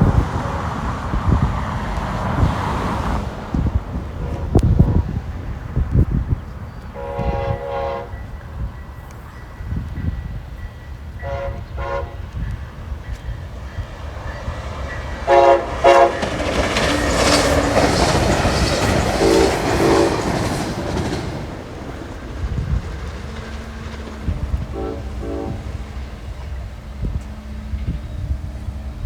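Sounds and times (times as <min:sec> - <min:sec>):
train horn blasts: 0:06.9 - 0:08.7, 0:11.1 - 0:20.6, 0:24.2 - 0:29.0
train wheels clattering over rail joints: 0:12.3 - 0:28.0.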